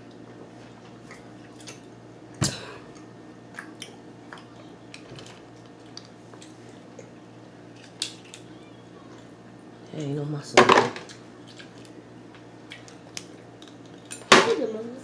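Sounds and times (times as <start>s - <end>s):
chewing: 2.9s - 7.2s, 11.1s - 12.0s, 12.6s - 14.2s.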